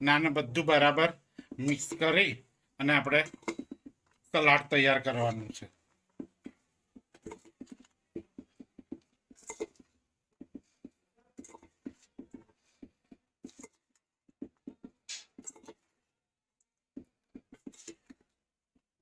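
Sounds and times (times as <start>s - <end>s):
spoon mixing food in a bowl: 1.4s - 2.2s, 6.2s - 15.9s, 17.0s - 18.4s.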